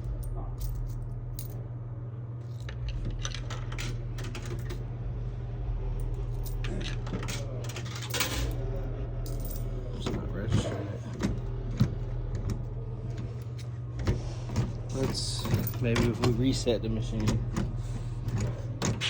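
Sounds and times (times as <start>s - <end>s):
steady low hum: 0.0s - 19.0s
coins clinking in coin mechanism: 2.6s - 4.8s, 6.2s - 8.6s, 9.2s - 11.4s, 14.5s - 17.4s.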